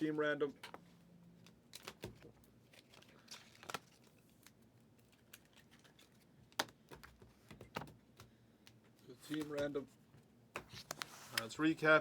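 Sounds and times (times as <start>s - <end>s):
faint clicks and taps: 4.4s - 11.5s.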